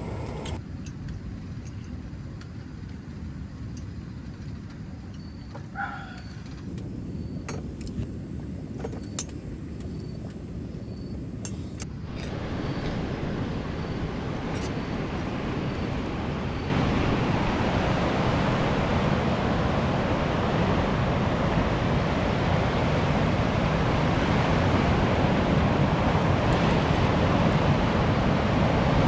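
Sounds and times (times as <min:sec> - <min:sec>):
wind: 0:00.0 - 0:29.0
surf breaking on beach: 0:12.1 - 0:29.0.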